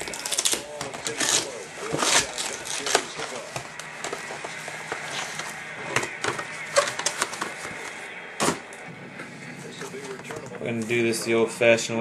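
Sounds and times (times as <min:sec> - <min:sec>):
plastic wrapping crinkling: 0:00.0 - 0:05.6.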